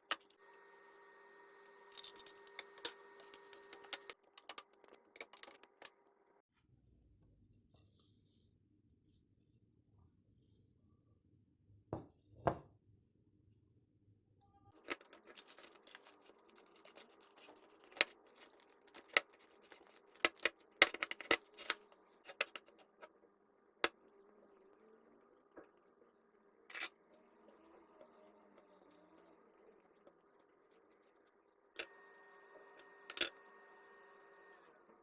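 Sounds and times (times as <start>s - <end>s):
kitchen clicks taps and scrapes: 2.0s - 5.9s, 14.8s - 23.2s, 33.1s - 33.4s.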